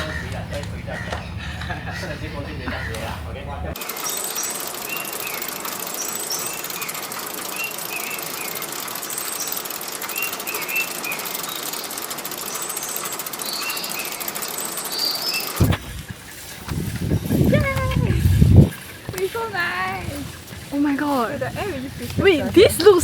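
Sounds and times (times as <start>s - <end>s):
bird chirping: 0.0s - 23.0s
cicadas droning: 0.0s - 23.0s.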